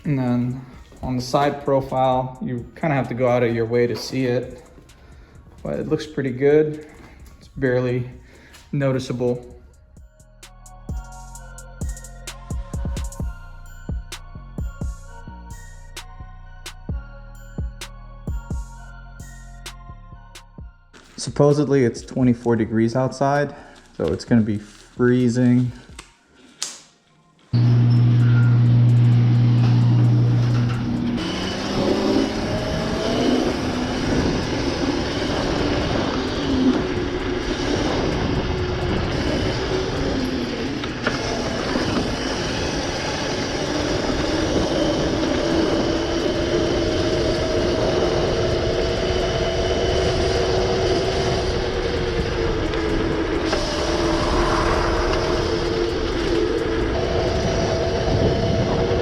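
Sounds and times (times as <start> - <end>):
electric motor and chain whine: 27.5 - 59.0
steady low hum: 27.6 - 59.0
tyre and wind noise: 30.4 - 59.0.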